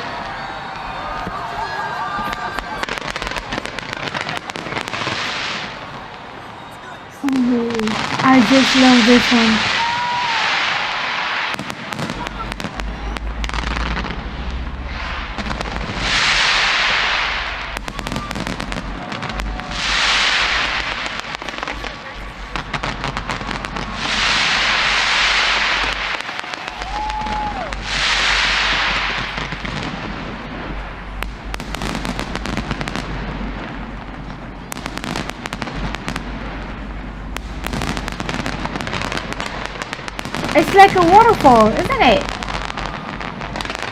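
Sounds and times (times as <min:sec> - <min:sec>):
fireworks pops and crackles: 0:00.0 - 0:06.6, 0:07.2 - 0:43.9
rumble of bursting shells: 0:27.8 - 0:43.9.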